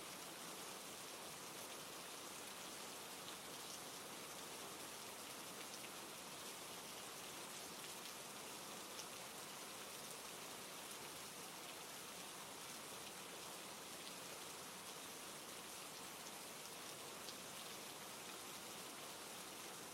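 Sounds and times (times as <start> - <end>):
rain falling on forest: 0.0 - 19.9
faint raindrop ticks: 5.5 - 6.0, 8.9 - 9.1.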